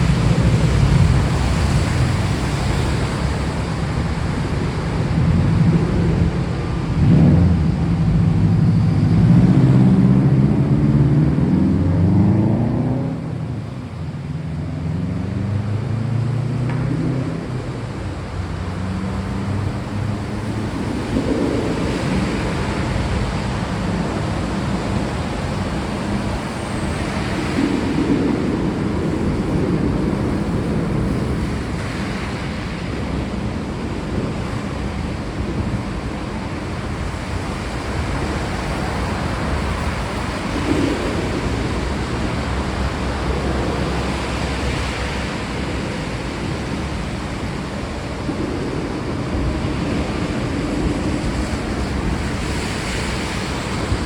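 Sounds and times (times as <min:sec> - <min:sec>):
distant thunder rumbles: 0:00.0 - 0:54.0
steady rain: 0:00.0 - 0:54.0.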